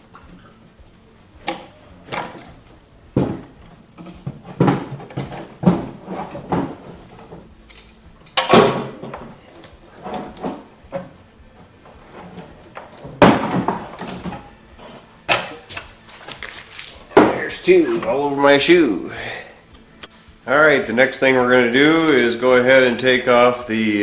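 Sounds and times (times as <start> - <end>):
knocks clunks and scrapes of tools: 0.0 - 18.3.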